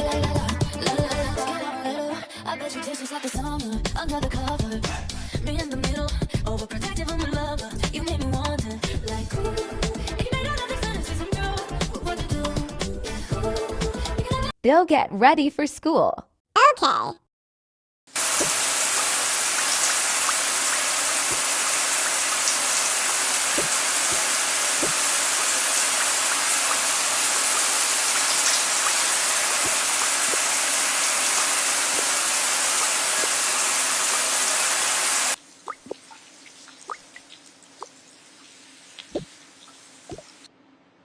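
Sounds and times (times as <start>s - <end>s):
water running: 18.2s - 40.5s.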